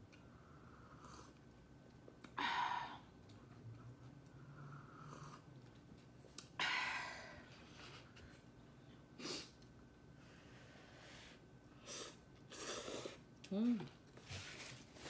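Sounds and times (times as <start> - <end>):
person slurping noodles: 11.9 - 13.2.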